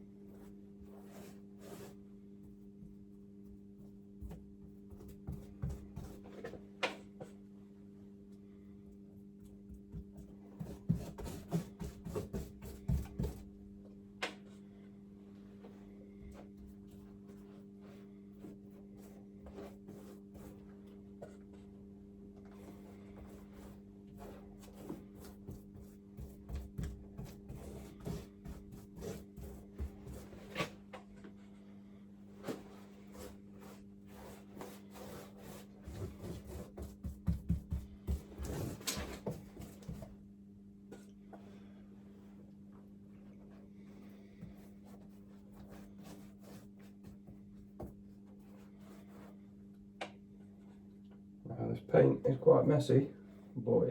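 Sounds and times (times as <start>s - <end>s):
paintbrush scraping and tapping: 0.4s - 7.4s, 9.4s - 13.5s, 15.6s - 21.6s, 22.4s - 30.7s, 32.4s - 40.1s, 44.2s - 49.4s.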